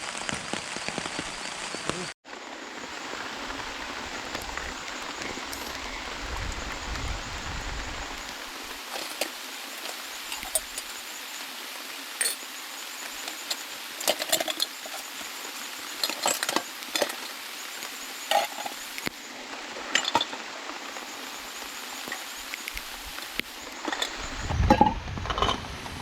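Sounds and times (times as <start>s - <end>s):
rain hissing: 0.0s - 26.0s
knocks and clinks of wood and gear: 8.8s - 11.0s, 16.0s - 17.4s.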